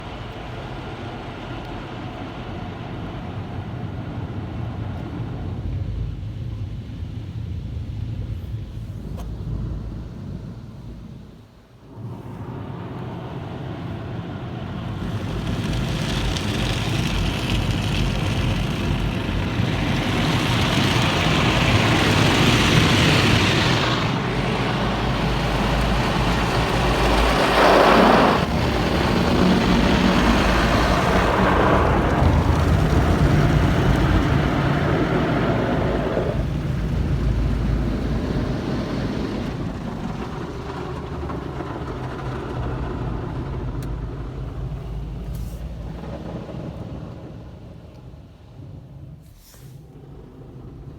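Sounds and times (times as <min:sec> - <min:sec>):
low rumble of car wash: 0:00.0 - 0:50.9
water spray hissing: 0:14.7 - 0:31.4.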